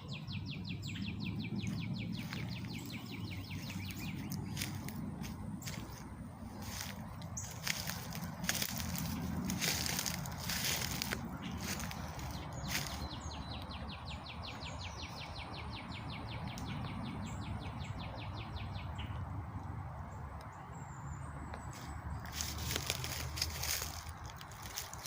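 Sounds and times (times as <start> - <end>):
steady low rumble: 0.4 - 19.8.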